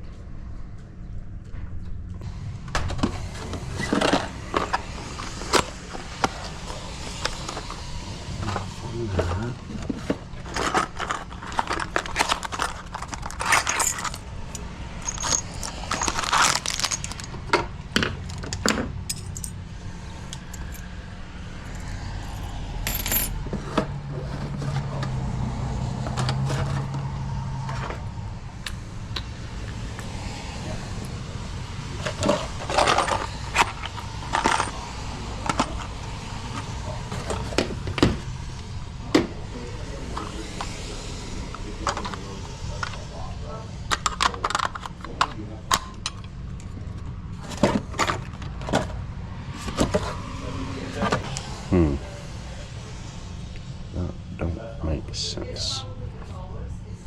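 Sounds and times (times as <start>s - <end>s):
low steady hum: 0.0s - 25.1s
metal parts and keys clinking: 10.5s - 17.5s, 18.2s - 19.6s, 20.3s - 20.8s, 21.7s - 23.4s, 32.0s - 34.8s.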